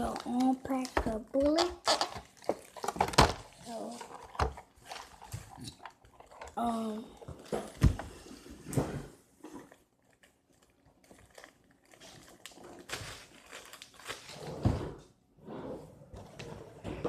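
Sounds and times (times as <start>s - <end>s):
toy packaging crinkling: 0.0s - 7.8s, 9.5s - 14.4s.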